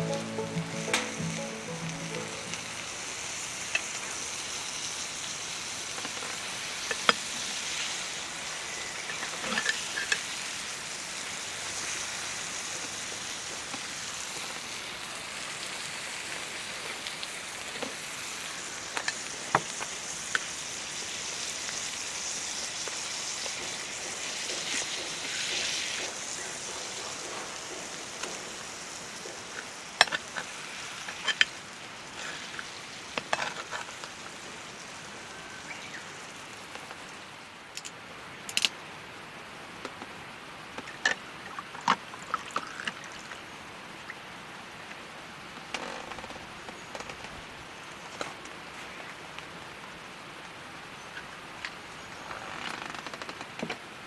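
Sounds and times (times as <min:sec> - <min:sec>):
food sizzling in a pan: 0:00.0 - 0:37.4.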